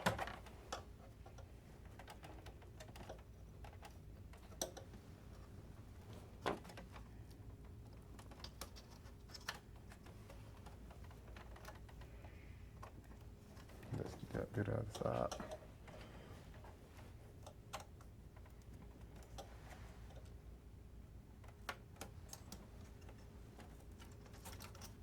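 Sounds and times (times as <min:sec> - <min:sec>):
small clicks and taps of tools: 0:00.4 - 0:05.0.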